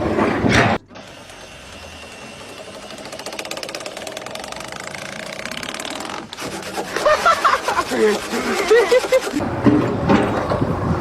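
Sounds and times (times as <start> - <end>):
small engine pulsing: 0.9 - 9.4.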